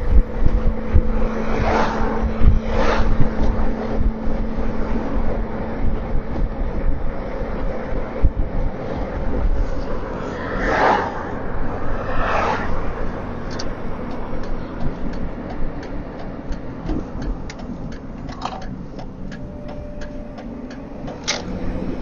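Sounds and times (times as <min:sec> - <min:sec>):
car road and engine rumble: 0:00.0 - 0:22.0
turn signal clicking: 0:11.4 - 0:22.0.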